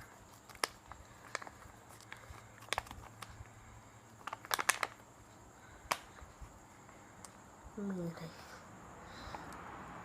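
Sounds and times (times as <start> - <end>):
plastic packets crinkling: 0.0 - 6.4.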